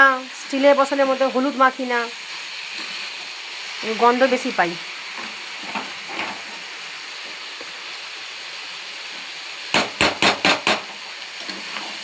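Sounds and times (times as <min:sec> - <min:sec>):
food sizzling in hot oil: 0:00.0 - 0:12.0
spatula scraping a pan: 0:10.8 - 0:12.0.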